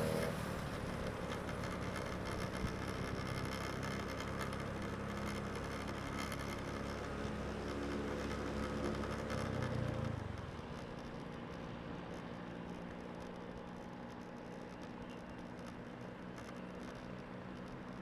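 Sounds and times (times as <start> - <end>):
car engine humming past: 0.0 - 1.0
drone of passing traffic: 0.0 - 2.3.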